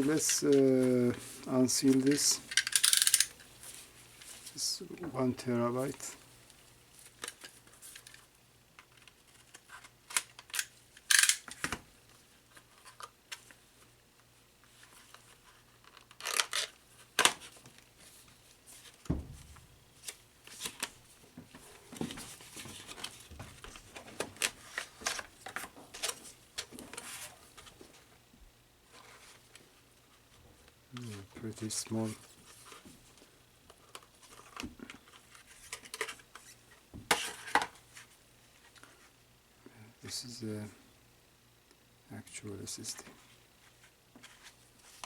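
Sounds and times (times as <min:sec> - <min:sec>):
packaging being opened: 0:15.8 - 0:17.6
packaging tearing: 0:16.0 - 0:16.8.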